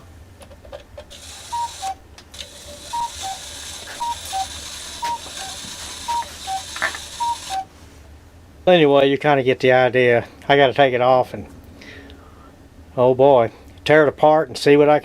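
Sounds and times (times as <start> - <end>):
clock mechanism clatter: 1.0 - 7.6
clock gears whirring and rattling: 1.1 - 7.6
cuckoo clock calling: 1.1 - 7.7.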